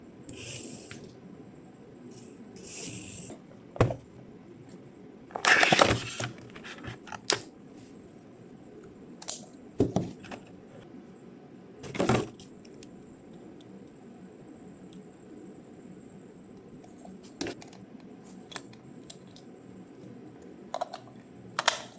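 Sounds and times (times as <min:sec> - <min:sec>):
packaging scraping and rustling: 0:05.4 - 0:07.2.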